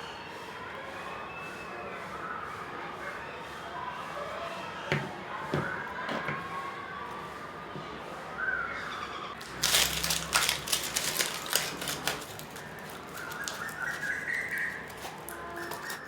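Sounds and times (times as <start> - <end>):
sharp crackling clicks: 9.4 - 16.0
small birds chirping: 12.5 - 16.0.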